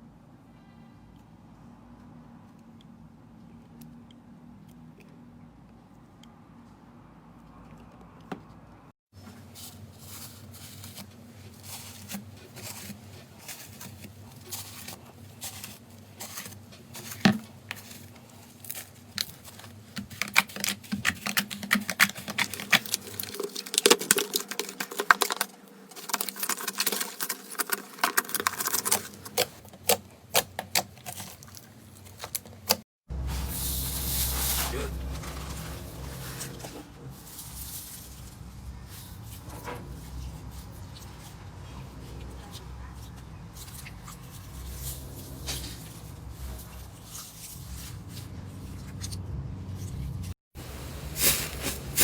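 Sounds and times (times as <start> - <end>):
slime crackling and popping: 20.1 - 32.8.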